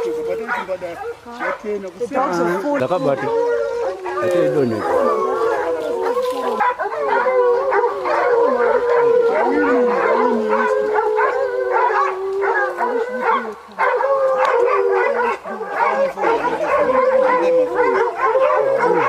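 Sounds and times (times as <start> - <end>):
hounds baying and howling: 0.0 - 19.0.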